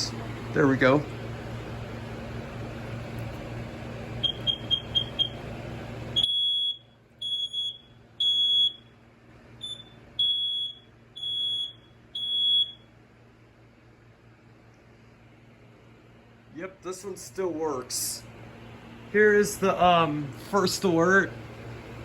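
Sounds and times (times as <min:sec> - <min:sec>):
smoke alarm beeping: 0:04.2 - 0:05.5, 0:06.2 - 0:09.0, 0:09.6 - 0:12.9
smoke alarm chirps: 0:04.2 - 0:05.5, 0:06.2 - 0:09.0, 0:09.6 - 0:12.9.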